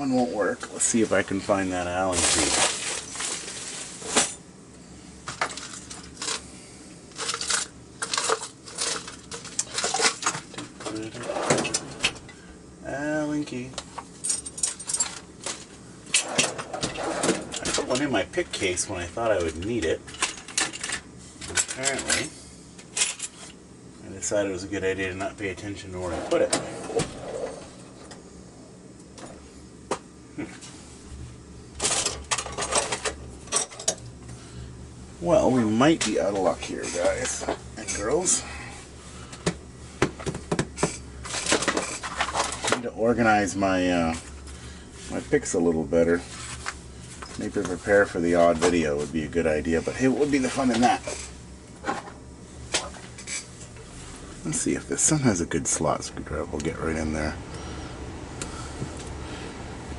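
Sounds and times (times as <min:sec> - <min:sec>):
metal tools clicking and rattling: 0:14.2 - 0:18.1.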